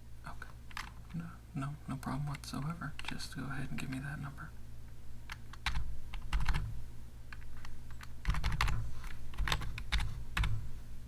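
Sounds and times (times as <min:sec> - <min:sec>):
computer keyboard typing: 0:00.7 - 0:00.9, 0:05.3 - 0:06.7, 0:07.3 - 0:10.6.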